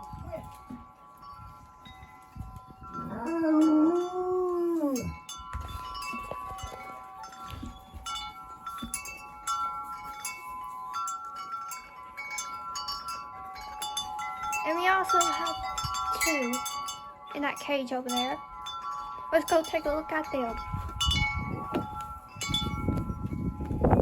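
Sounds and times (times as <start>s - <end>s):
wind chimes ringing: 0.0s - 24.0s
dog howling: 2.9s - 5.2s.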